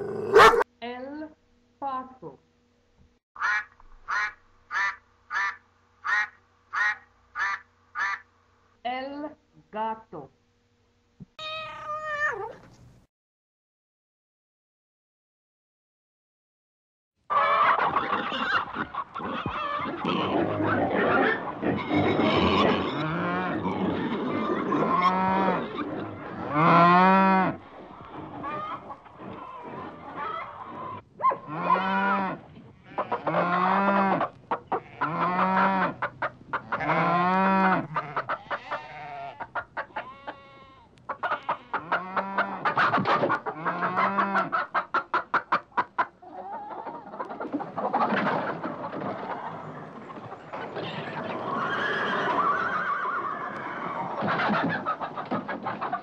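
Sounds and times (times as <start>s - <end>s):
fowl clucking: 0.0s - 0.6s, 3.4s - 8.3s, 17.3s - 51.6s, 54.1s - 56.0s
goats or sheep bleating: 31.5s - 36.0s, 36.6s - 42.5s.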